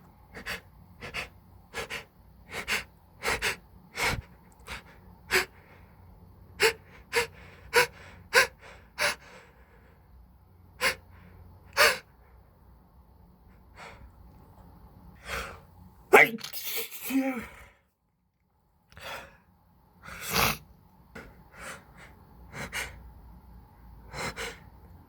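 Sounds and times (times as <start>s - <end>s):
sharp gasping breaths: 0.3s - 6.0s, 6.6s - 10.0s, 10.8s - 12.4s, 21.5s - 23.0s, 24.1s - 24.8s.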